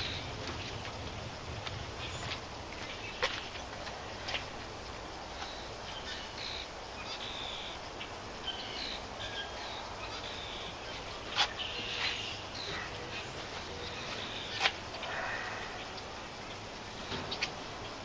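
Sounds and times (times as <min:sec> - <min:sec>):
birds chirping: 0:00.0 - 0:18.0
outdoor background noise: 0:00.0 - 0:18.0.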